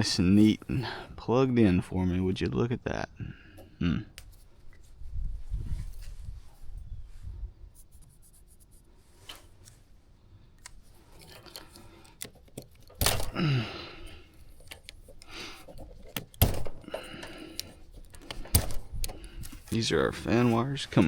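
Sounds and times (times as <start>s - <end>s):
handling clicks and knocks: 10.6s - 13.4s, 14.0s - 19.8s.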